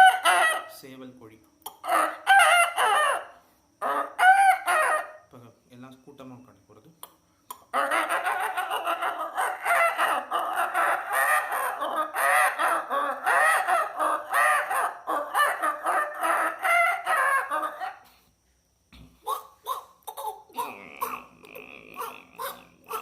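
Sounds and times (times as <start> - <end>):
chicken-like clucking and crowing: 0.0 - 0.7, 7.8 - 18.1.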